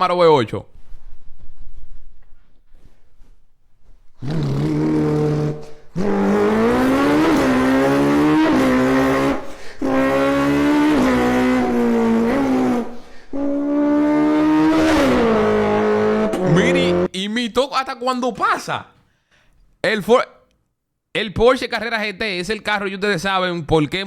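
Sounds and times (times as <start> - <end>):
person imitating engine with mouth: 4.2 - 17.1.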